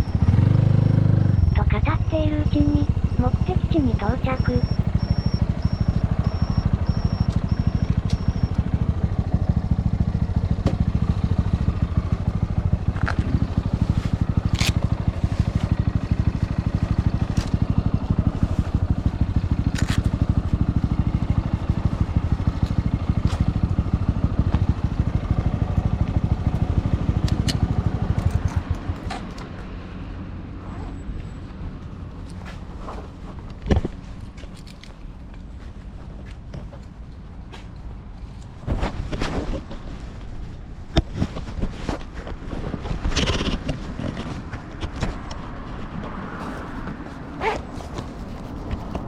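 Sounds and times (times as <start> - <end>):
motorcycle engine running: 0.0 - 29.4.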